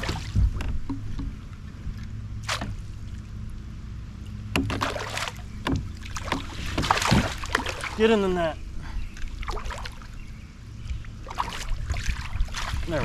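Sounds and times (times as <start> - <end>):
knocks and clicks on kayak: 0.0 - 1.4, 4.5 - 5.0, 5.6 - 7.7
water splashing: 0.0 - 3.5, 4.6 - 8.6, 9.2 - 10.2, 10.8 - 13.0.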